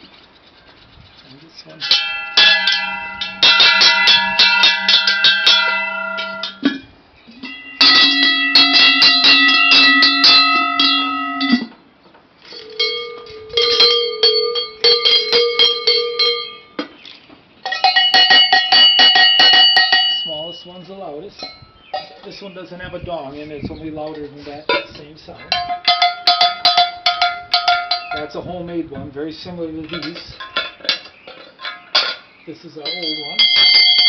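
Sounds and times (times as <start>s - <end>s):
cow bells ringing: 1.7s - 11.8s, 12.5s - 16.8s, 17.6s - 22.5s, 24.7s - 28.4s, 30.0s - 34.0s.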